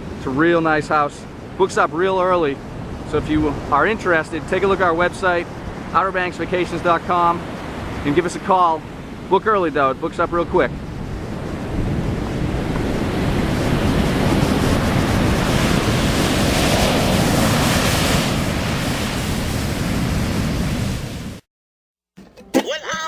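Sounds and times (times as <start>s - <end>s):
ocean surf breaking: 0.0s - 21.4s
wind rumbling on microphone: 0.0s - 21.4s.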